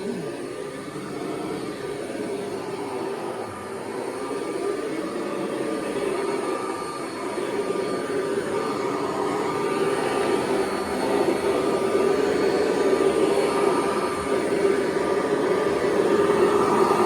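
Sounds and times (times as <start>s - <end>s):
upright vacuum cleaner running: 0.0s - 17.0s.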